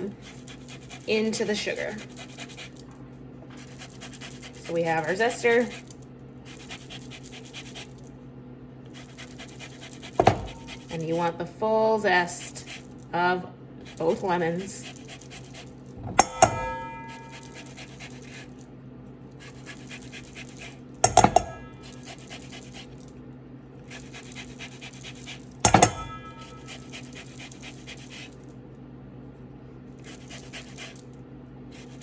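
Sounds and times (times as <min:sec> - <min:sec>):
lemon rasping on metal zester: 0:00.0 - 0:02.8, 0:03.6 - 0:08.0, 0:08.9 - 0:11.2, 0:13.8 - 0:18.6, 0:19.4 - 0:23.1, 0:23.8 - 0:28.5.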